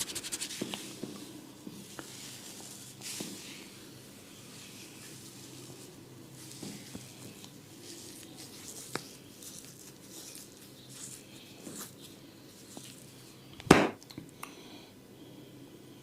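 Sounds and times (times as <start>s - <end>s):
hands scratching hair and scalp: 0.0s - 1.0s, 2.0s - 3.8s, 4.5s - 13.2s
loud smack: 13.7s - 14.0s.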